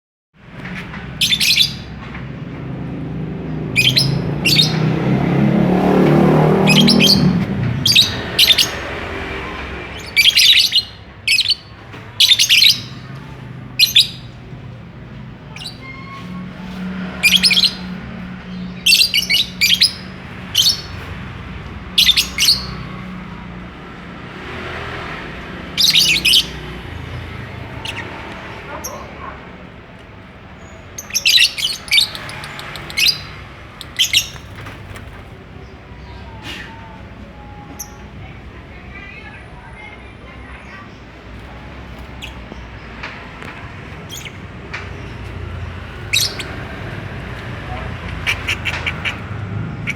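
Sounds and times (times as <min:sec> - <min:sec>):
shrill bird chirps: 0:01.2 - 0:01.9, 0:03.8 - 0:04.9, 0:06.6 - 0:09.0, 0:09.9 - 0:13.1, 0:13.8 - 0:14.4, 0:15.5 - 0:16.6, 0:17.2 - 0:21.0, 0:22.0 - 0:22.9, 0:25.8 - 0:27.0, 0:27.7 - 0:29.1, 0:30.6 - 0:34.8, 0:44.1 - 0:49.9.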